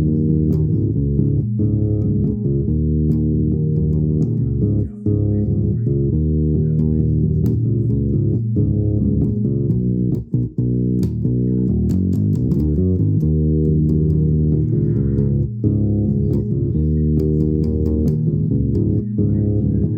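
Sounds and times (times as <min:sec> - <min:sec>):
low plucked string instrument: 0:00.0 - 0:19.9.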